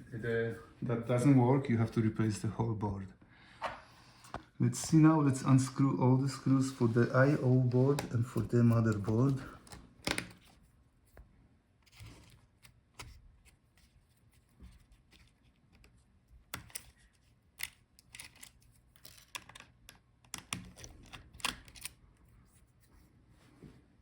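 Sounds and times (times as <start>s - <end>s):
metal screws and tools handled: 17.6s - 19.7s.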